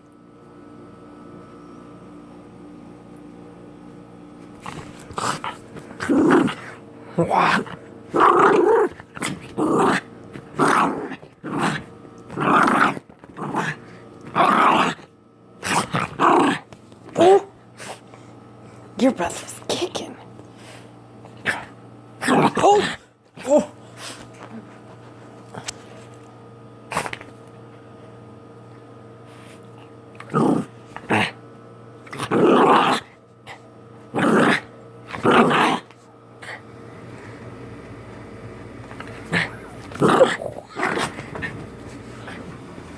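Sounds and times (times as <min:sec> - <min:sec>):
dog growling in play: 0:04.6 - 0:18.0, 0:21.4 - 0:24.7, 0:29.6 - 0:31.4, 0:32.0 - 0:37.5, 0:38.7 - 0:42.9.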